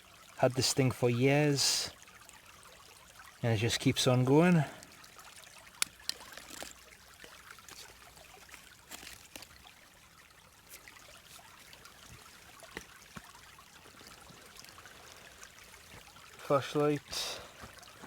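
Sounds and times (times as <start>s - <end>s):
small stream trickling: 0.0s - 18.0s.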